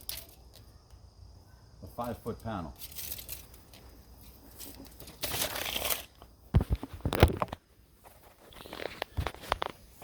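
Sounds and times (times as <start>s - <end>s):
handling rustle: 2.3s - 10.0s.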